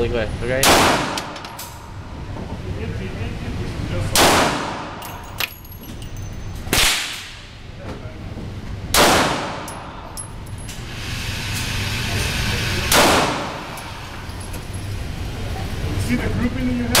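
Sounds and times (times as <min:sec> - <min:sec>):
pistol shots echoing indoors: 0:00.6 - 0:01.6, 0:04.1 - 0:05.5, 0:06.7 - 0:07.5, 0:08.9 - 0:09.9, 0:12.9 - 0:13.8.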